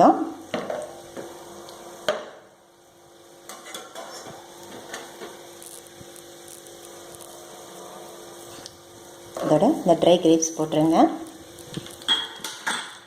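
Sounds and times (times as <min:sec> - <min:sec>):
spoon clinking and scraping pan: 0:03.5 - 0:04.3, 0:12.0 - 0:13.0.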